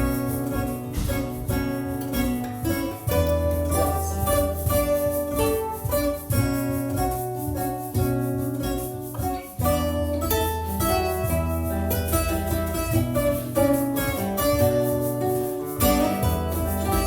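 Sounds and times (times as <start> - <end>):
acoustic guitar music: 0.0 - 17.0.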